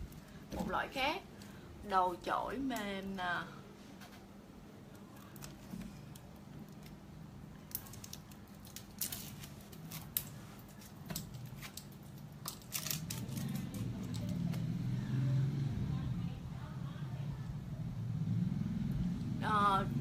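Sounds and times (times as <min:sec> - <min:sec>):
faint low hum: 0:00.0 - 0:20.0
packaging clicks and rustles: 0:07.7 - 0:14.6.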